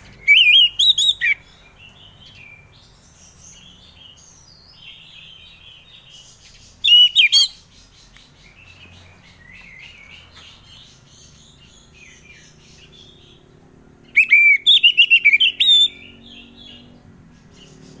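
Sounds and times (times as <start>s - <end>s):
soft bird chirping: 0.0s - 18.0s
thrush whistled song: 0.2s - 2.7s, 6.8s - 7.6s, 14.1s - 18.0s.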